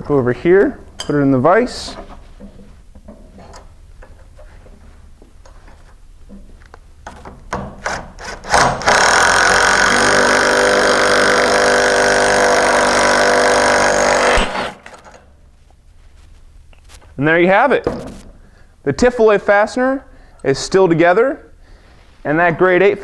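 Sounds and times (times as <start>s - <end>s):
impact wrench running: 7.8s - 15.2s.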